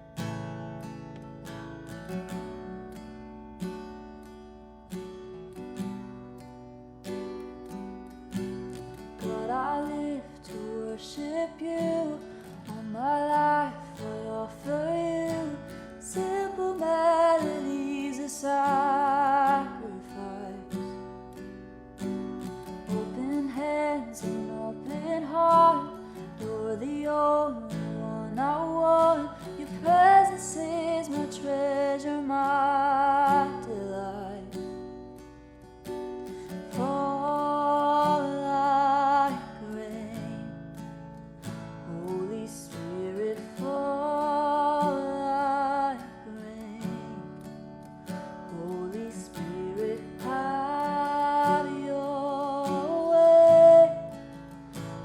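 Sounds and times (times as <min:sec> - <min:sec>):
strummed acoustic guitar: 0:00.0 - 0:55.0
person singing with vibrato: 0:09.0 - 0:21.1, 0:22.1 - 0:34.7, 0:36.5 - 0:40.5, 0:41.8 - 0:55.0.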